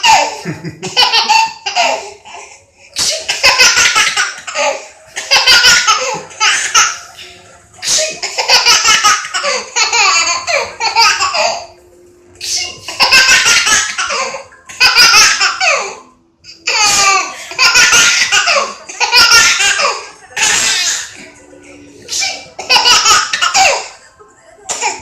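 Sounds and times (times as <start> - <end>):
baby squealing laughs: 3.0 - 11.6, 12.4 - 16.0.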